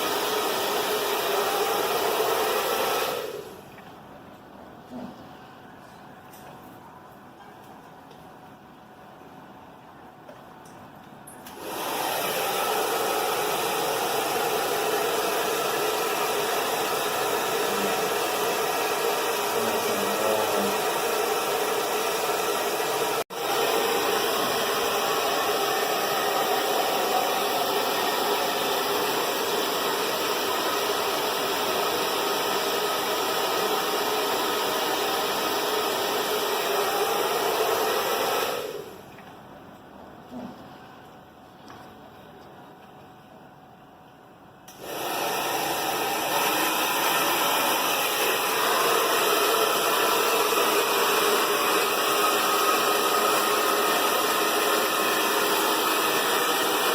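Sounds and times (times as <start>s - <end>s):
hair dryer running: 0.0s - 3.6s, 11.4s - 39.0s, 44.7s - 56.9s.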